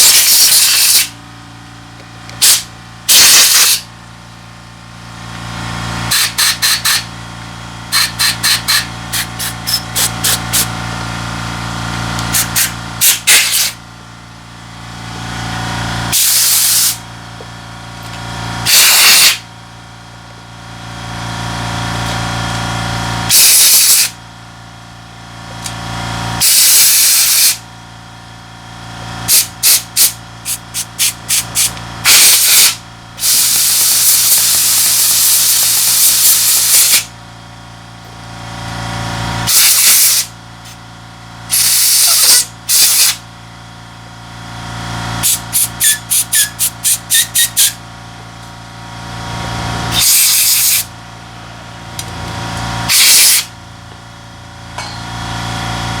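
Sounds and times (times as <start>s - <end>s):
spray can hissing: 0.0s - 1.1s, 2.4s - 3.8s, 7.9s - 10.7s, 12.3s - 13.8s, 18.7s - 19.4s, 29.3s - 32.8s, 45.2s - 47.8s.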